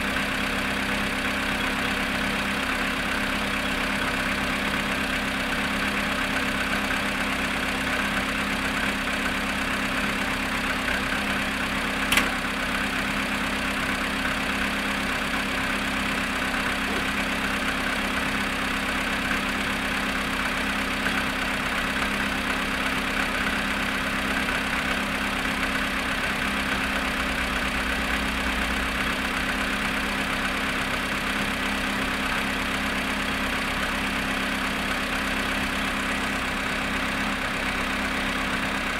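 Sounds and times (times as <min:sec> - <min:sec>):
car engine idling with knock: 0:00.1 - 0:38.9
sharp click: 0:12.1 - 0:12.4.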